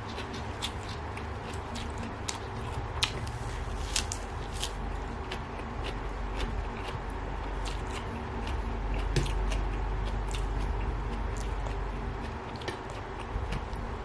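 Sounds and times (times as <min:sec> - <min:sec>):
low hum: 0:00.0 - 0:14.0
food being handled by hand: 0:01.8 - 0:04.8.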